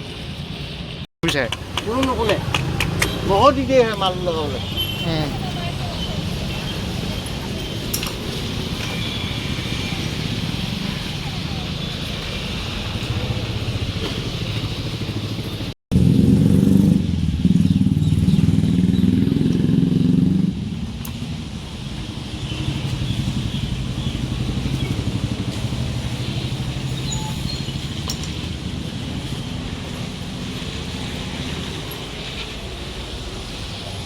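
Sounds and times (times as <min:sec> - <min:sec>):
motorcycle engine running: 0:13.0 - 0:20.8, 0:22.2 - 0:31.4.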